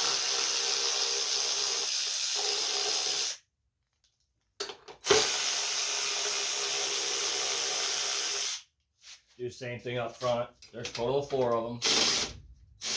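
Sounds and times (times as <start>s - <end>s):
air ratchet running: 0.0s - 3.4s, 5.1s - 8.6s.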